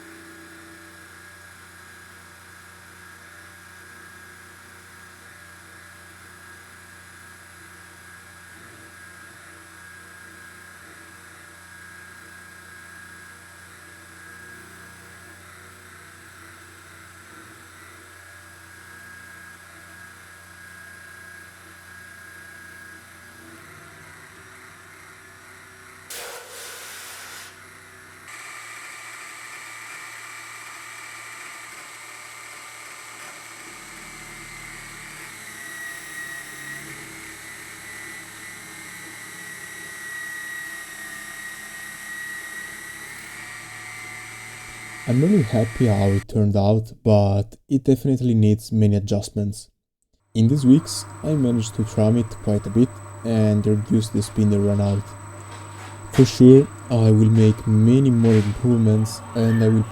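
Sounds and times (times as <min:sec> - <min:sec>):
milling machine motor whine: 0:09.3 - 0:46.2, 0:50.4 - 0:59.9
loud noisy burst: 0:26.1 - 0:27.6.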